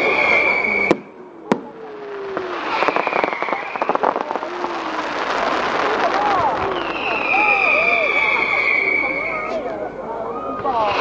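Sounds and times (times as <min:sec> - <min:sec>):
faint whistle: 0:00.0 - 0:01.2, 0:06.6 - 0:11.0
rapid firework crackling: 0:00.0 - 0:09.2
firework bangs: 0:00.0 - 0:09.4.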